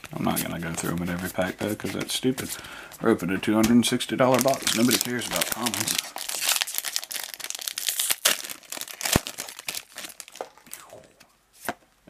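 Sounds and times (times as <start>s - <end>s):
foil wrapper crinkling: 4.3s - 10.8s.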